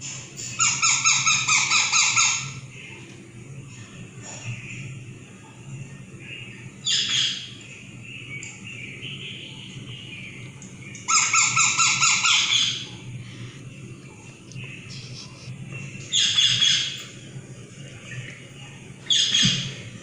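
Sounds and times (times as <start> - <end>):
parakeet calling and chirping: 0.6 - 2.6, 11.1 - 12.9, 14.6 - 17.0.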